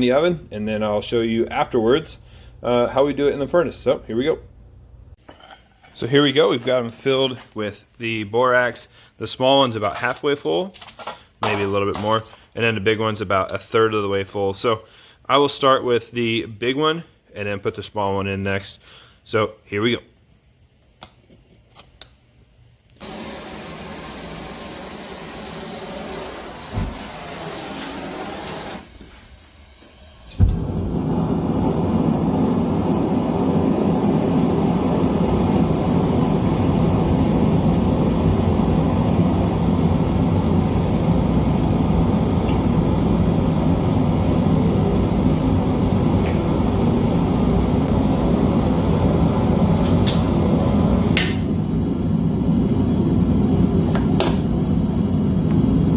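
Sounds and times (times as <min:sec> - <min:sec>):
furnace burner rushing: 0:23.0 - 0:55.9
thump: 0:26.7 - 0:27.1, 0:30.3 - 0:30.7.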